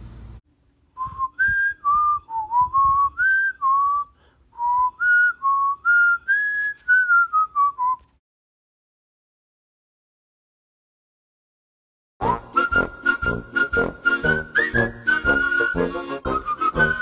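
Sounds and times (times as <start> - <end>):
person whistling a tune: 1.0 - 8.1, 12.2 - 17.0.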